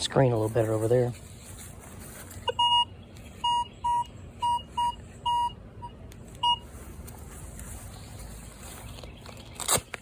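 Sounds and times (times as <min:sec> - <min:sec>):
metal detector short beeps: 0:02.5 - 0:06.7.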